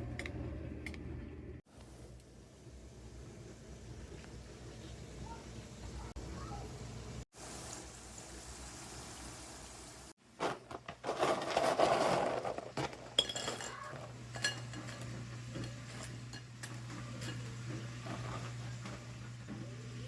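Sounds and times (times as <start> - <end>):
utensils clattering on pots and dishes: 10.4 - 19.8.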